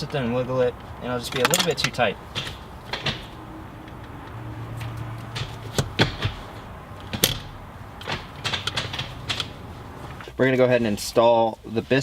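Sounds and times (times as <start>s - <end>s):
steady low hum: 0.0s - 10.3s
sharp clicks and knocks: 0.8s - 10.3s.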